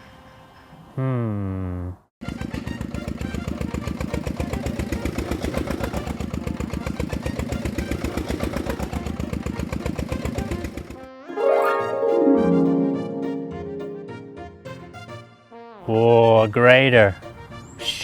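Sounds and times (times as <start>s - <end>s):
heavy vehicle engine chugging: 2.2s - 11.0s.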